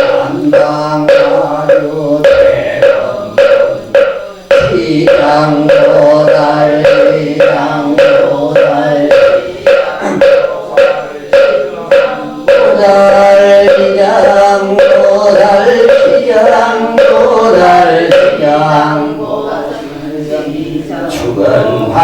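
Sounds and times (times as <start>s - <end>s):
wooden fish knocks: 0.0s - 16.3s
liturgical chanting: 0.0s - 22.0s.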